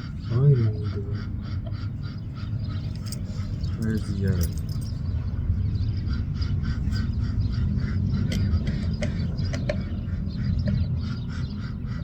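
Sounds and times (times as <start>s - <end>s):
bird calling rapidly: 0.0s - 4.6s
steady low rumble: 0.0s - 12.0s.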